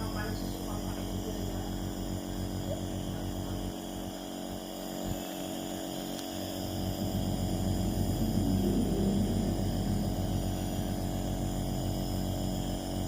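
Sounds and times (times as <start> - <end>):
nebulizer compressor humming: 0.0 - 13.0.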